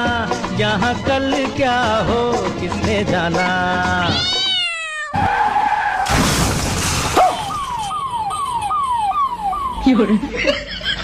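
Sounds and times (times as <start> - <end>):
siren-like falling tone: 7.2 - 10.2.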